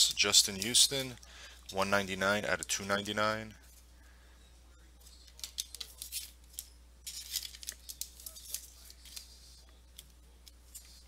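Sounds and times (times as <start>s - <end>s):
faint low hum: 0.0s - 11.0s
trading cards rustling: 0.1s - 2.0s, 5.0s - 11.0s.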